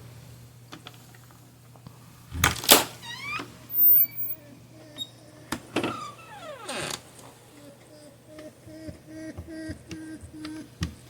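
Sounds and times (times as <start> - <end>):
porcupine squeaking and whining: 3.0 - 4.4, 5.9 - 7.0.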